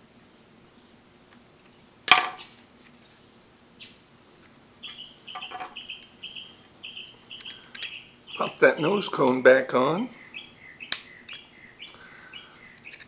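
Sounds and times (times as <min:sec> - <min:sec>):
bird chirping: 0:00.0 - 0:13.0
sharp click: 0:10.9 - 0:11.2.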